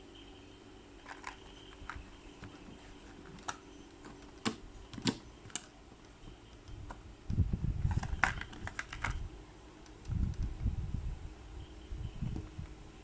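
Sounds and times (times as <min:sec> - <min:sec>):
plastic parts clicking: 0:01.0 - 0:09.2
packaging rubbing and bumping: 0:07.8 - 0:09.2.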